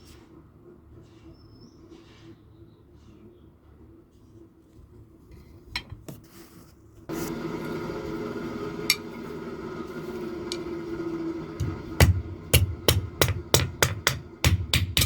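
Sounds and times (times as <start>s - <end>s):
motor-driven machine humming: 7.1s - 15.0s.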